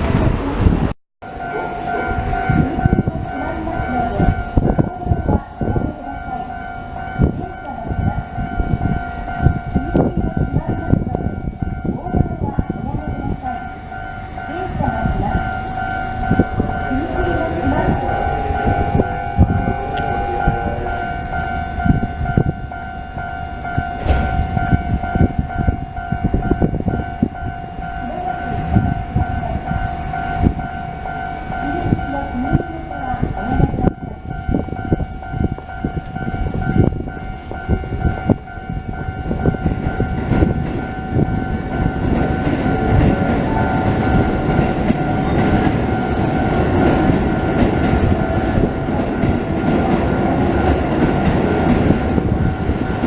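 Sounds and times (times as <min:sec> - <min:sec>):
level crossing warning bell: 0:01.2 - 0:53.0
train wheels knocking over rail joints: 0:39.4 - 0:53.0.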